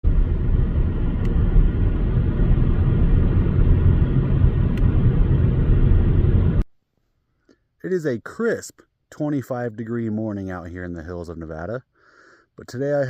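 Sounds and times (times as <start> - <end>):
loud low rumbling: 0.0 - 6.6.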